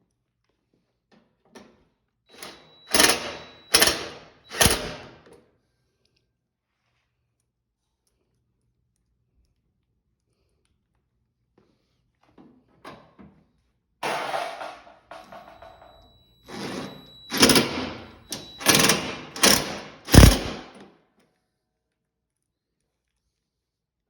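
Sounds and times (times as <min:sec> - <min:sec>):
hand rivet tool crunching: 0:17.3 - 0:20.8.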